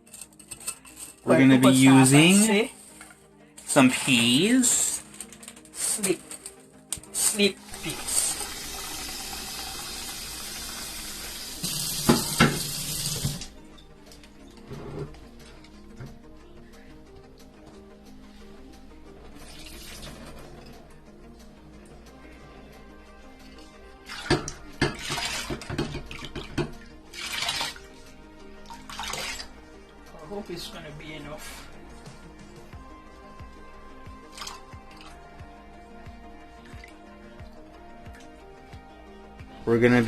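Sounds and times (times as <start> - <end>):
pot and utensils clattering: 0.0 - 6.6, 11.6 - 13.5, 24.1 - 27.8
water running from a tap: 7.7 - 13.5, 24.1 - 27.8, 28.9 - 29.5
water splashing: 24.0 - 27.8, 28.8 - 29.5.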